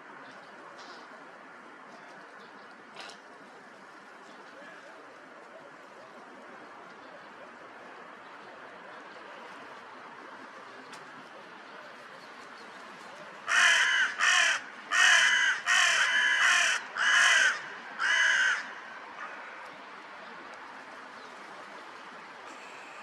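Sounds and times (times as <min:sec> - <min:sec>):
crow cawing: 0:13.5 - 0:19.5.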